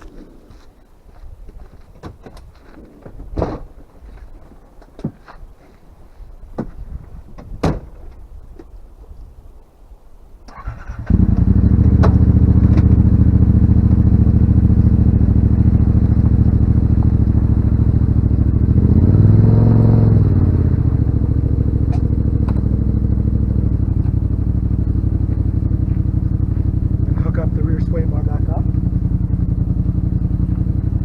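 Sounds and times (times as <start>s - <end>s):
engine starting and idling: 10.5s - 12.9s
engine revving: 10.5s - 31.0s.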